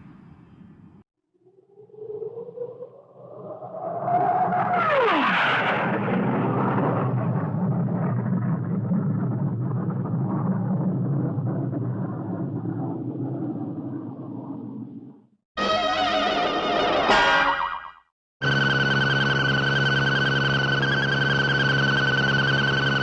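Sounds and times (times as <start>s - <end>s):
rumbling engine-like noise: 4.4s - 15.1s
cartoon rising and dropping tone: 15.6s - 18.6s.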